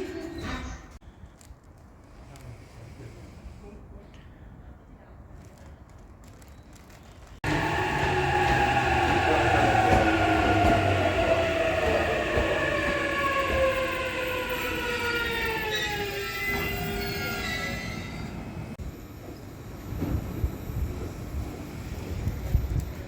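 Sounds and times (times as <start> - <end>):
train rumbling ride noise: 7.2 - 23.0.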